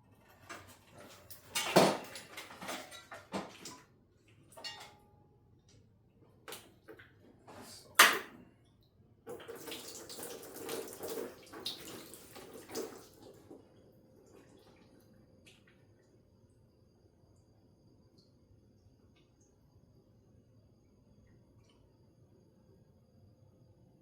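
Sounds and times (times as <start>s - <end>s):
liquid splashing into a bucket: 9.3s - 15.8s.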